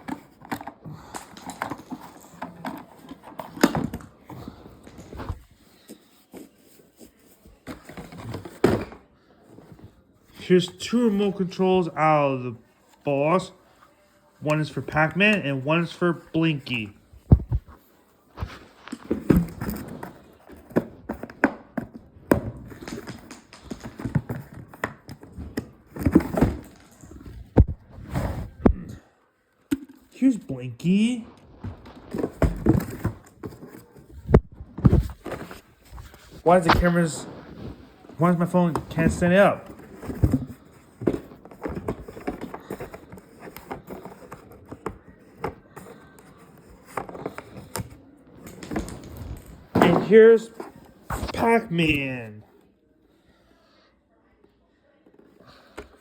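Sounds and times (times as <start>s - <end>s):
objects knocking and clattering: 0.0s - 5.5s, 18.4s - 29.0s, 31.6s - 36.4s, 38.7s - 51.3s.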